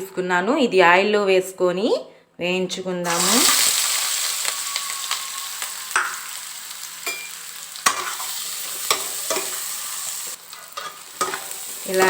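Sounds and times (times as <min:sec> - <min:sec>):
onions sizzling in oil: 0:03.0 - 0:12.0.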